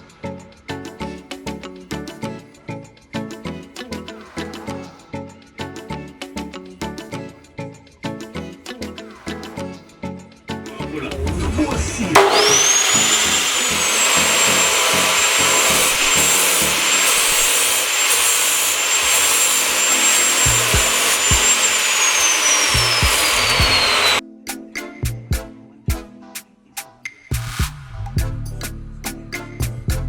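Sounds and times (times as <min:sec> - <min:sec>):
cut-off saw motor whining: 0:10.8 - 0:24.2
loud hiss: 0:10.9 - 0:24.2
music with a steady beat: 0:20.5 - 0:21.5, 0:23.0 - 0:30.0.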